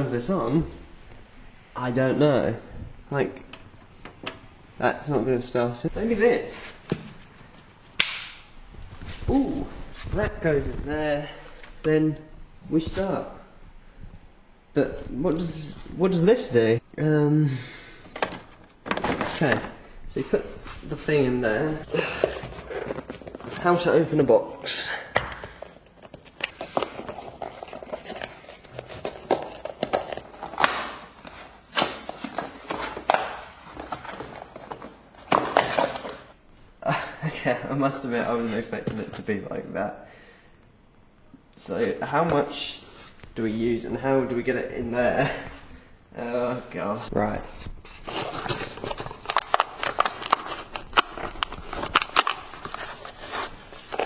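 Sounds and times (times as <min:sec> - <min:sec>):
box snapping: 0:08.0 - 0:08.4.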